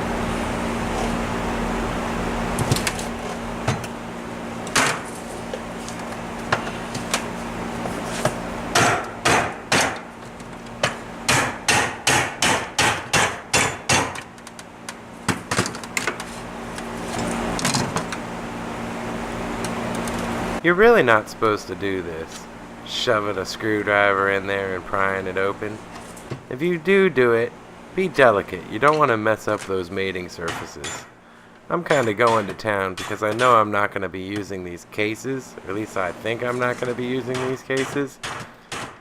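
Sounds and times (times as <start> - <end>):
hammer striking metal engine case: 8.7 - 10.1, 10.8 - 14.3, 37.3 - 39.0.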